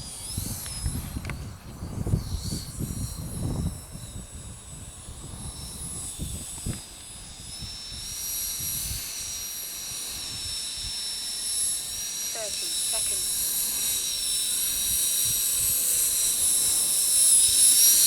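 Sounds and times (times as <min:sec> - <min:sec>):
electric ducted fan whine: 0:00.0 - 0:18.0.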